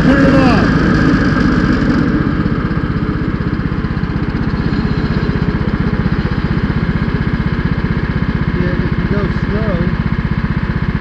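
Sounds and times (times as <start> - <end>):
lawn mower engine running: 0.0 - 11.0.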